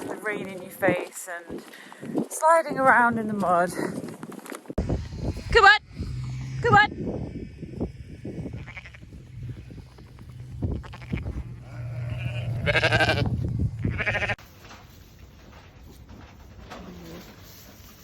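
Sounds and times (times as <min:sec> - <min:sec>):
steady low hum: 0:04.8 - 0:14.3
sheep bleating: 0:08.5 - 0:09.5, 0:10.4 - 0:14.4.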